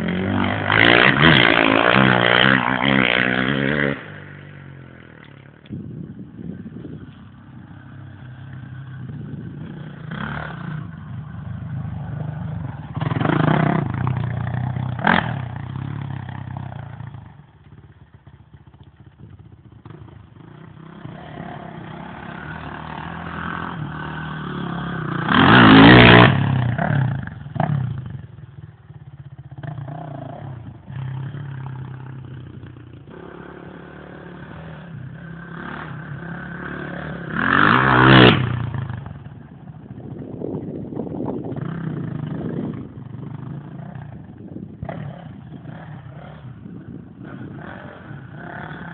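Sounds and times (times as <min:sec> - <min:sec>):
motocross bikes revving: 0:00.0 - 0:40.0, 0:41.1 - 0:48.9.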